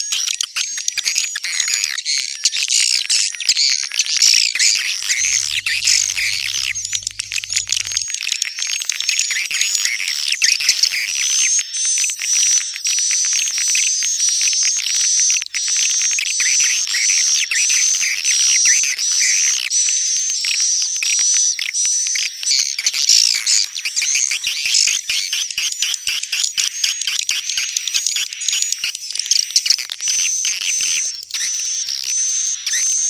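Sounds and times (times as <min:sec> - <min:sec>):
high twittering bird chirps: 0:03.3 - 0:11.1.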